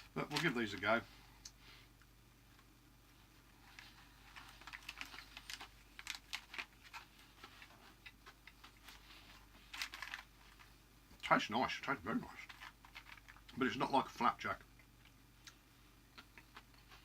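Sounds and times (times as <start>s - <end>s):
chewing crunchy flapjack: 12.4s - 13.6s.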